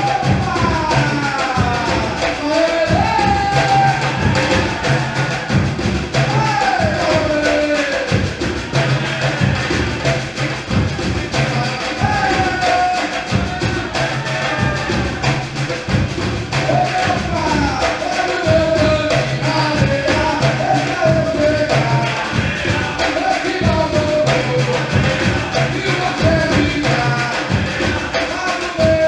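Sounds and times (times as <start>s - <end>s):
person singing: 0.0s - 10.3s, 11.3s - 15.7s, 16.5s - 29.0s
percussion ensemble groove: 0.0s - 29.0s.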